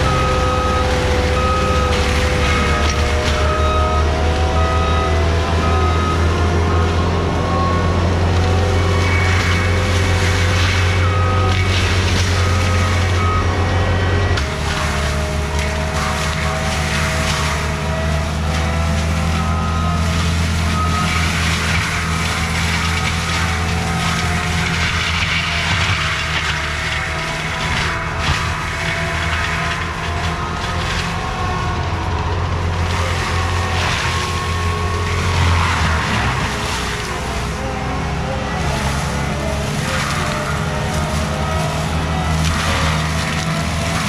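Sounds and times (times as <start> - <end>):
backup alarm beeping: 0.0 - 8.0
diesel engine working hard: 0.0 - 44.0.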